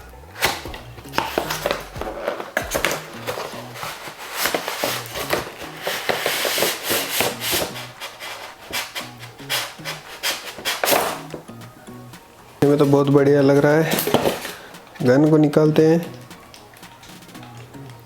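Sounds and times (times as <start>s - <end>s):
background music with bass line: 0.0s - 18.0s
plastic toy parts being handled: 0.4s - 11.4s.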